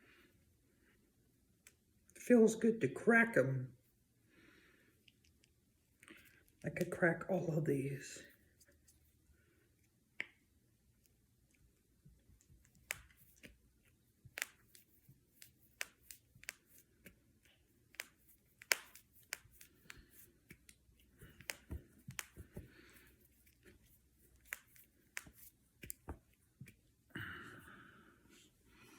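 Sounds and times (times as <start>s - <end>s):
knuckles cracking: 14.3s - 17.2s, 17.9s - 26.8s.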